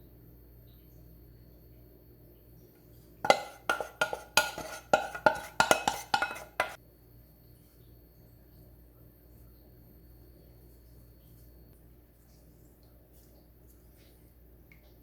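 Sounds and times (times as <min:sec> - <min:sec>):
kitchenware clinking: 0:03.2 - 0:06.8.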